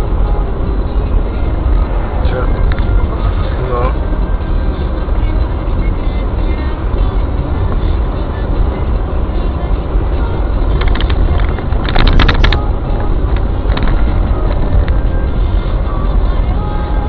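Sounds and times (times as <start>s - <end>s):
car engine rumble: 0.0s - 17.0s
road noise: 0.0s - 17.0s
sharp clicks: 10.7s - 12.6s.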